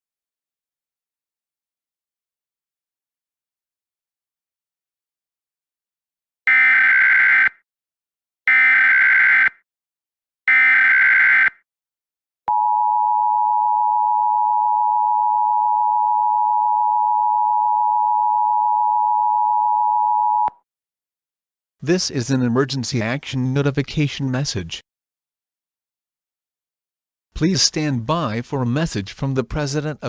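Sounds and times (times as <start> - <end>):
two-tone attention alarm: 6.5 - 7.6, 8.5 - 9.6, 10.5 - 11.6.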